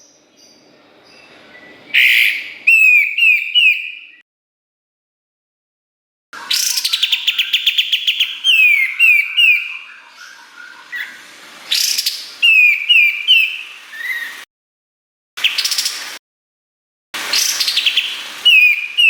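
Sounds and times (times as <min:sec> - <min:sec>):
songbird trilling and whistling: 0:00.0 - 0:04.2, 0:06.4 - 0:14.4, 0:17.3 - 0:19.0.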